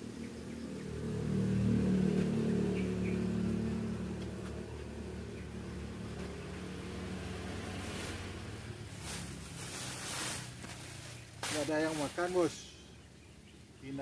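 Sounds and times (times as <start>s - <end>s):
vehicle engine running: 0.0s - 14.0s
brief rustles: 9.0s - 12.5s.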